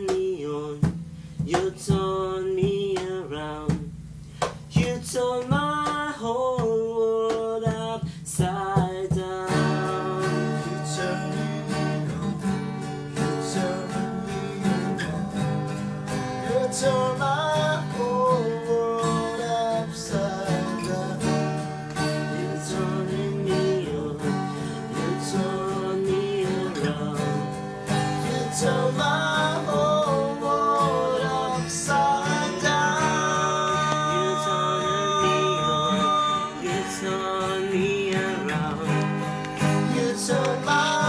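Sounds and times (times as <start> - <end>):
strummed acoustic guitar: 0.0 - 41.0
person singing: 4.8 - 12.4, 16.4 - 41.0.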